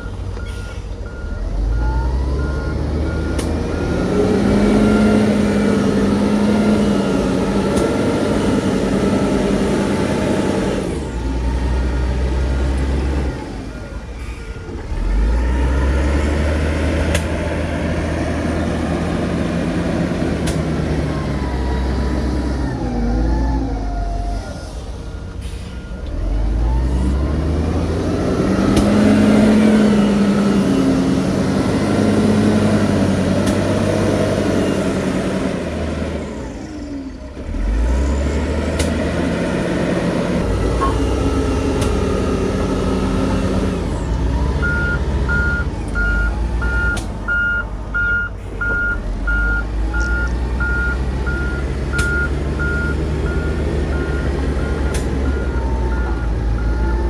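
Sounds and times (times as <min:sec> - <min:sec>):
reversing alarm beeping: 0:00.0 - 0:07.1, 0:40.7 - 0:43.4, 0:44.4 - 0:57.0
heavy diesel engines revving: 0:00.0 - 0:57.0.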